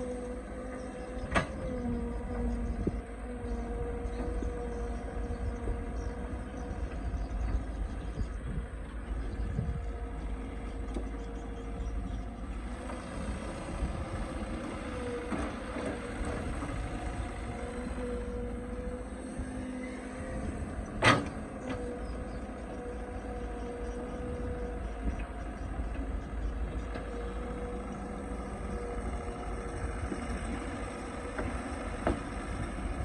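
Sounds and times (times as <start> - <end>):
diesel engine under load: 0.0 - 33.0
hydraulic whine: 0.0 - 33.0.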